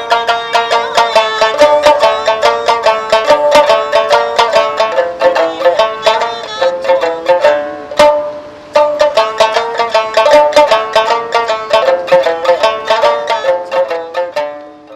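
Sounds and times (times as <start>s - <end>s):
plucked lute melody: 0.0s - 14.9s.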